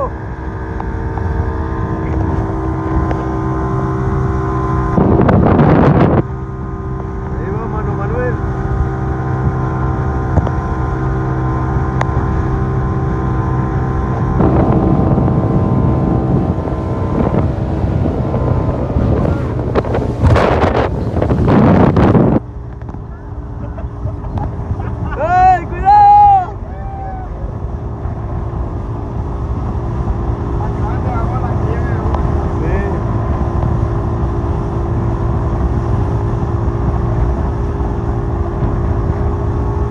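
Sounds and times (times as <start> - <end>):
wind on microphone: 0.0 - 23.1, 26.5 - 39.9
boat engine humming: 0.0 - 39.9
rushing water: 12.2 - 22.4.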